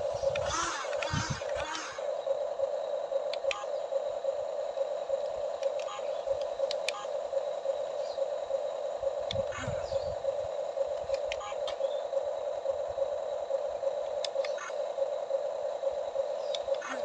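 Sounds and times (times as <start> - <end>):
electric motor whining: 0.0 - 2.6
faint clicks: 3.3 - 3.7, 5.2 - 7.0, 10.9 - 11.8, 14.0 - 14.7.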